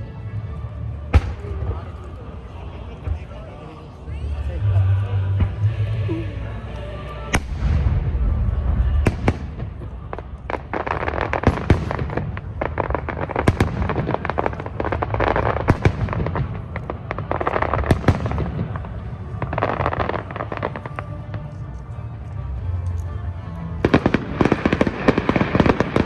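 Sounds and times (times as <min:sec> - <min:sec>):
low rumble: 0:00.0 - 0:19.5
fireworks crackling: 0:06.8 - 0:26.0
fireworks bangs: 0:07.4 - 0:21.4, 0:23.8 - 0:26.0.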